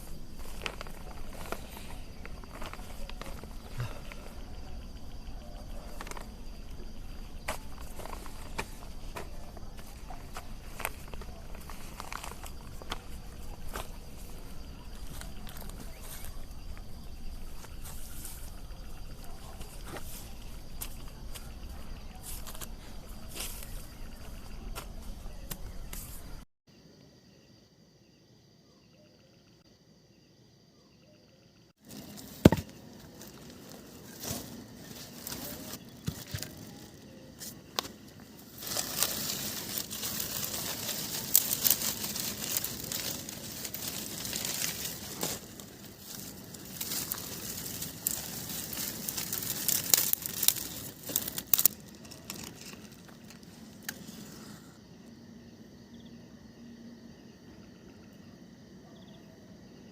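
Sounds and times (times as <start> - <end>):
campfire crackling: 0.0 - 24.6, 31.8 - 54.8
crickets chirping: 0.0 - 59.9.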